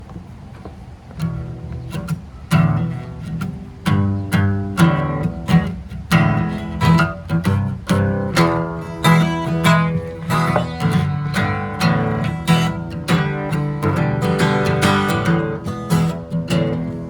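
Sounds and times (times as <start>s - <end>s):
acoustic guitar blues: 1.2s - 17.0s.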